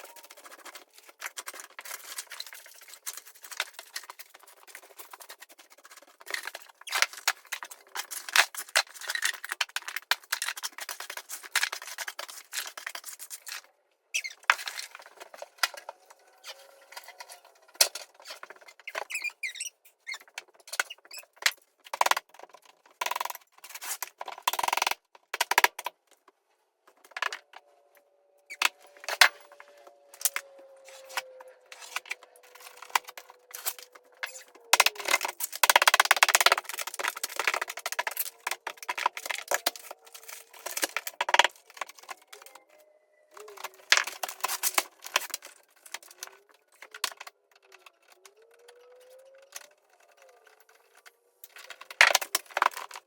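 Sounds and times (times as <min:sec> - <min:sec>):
long falling squeak: 0:28.3 - 0:34.6.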